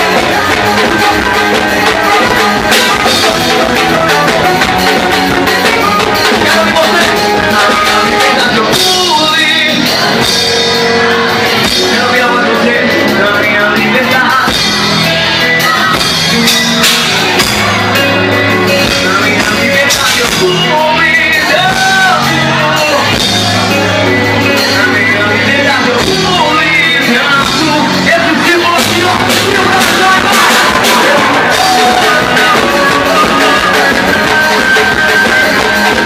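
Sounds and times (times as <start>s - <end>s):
live band playing gospel rock: 0.0s - 36.0s
person singing lead: 0.0s - 36.0s
shouted vocals: 21.3s - 24.4s, 28.2s - 36.0s.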